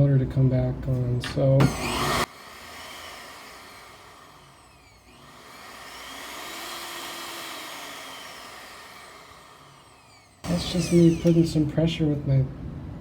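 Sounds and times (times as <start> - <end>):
blender motor whirring: 1.6 - 11.9.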